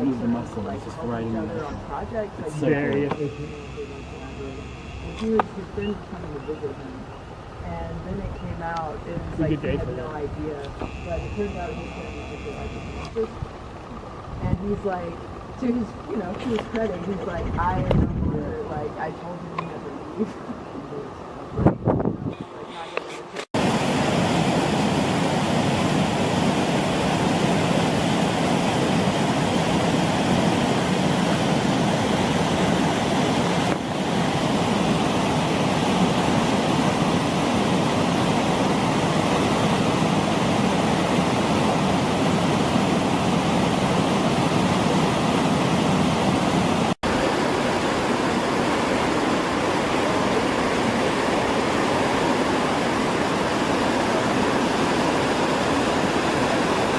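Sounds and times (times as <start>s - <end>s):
water rushing: 23.4s - 56.9s.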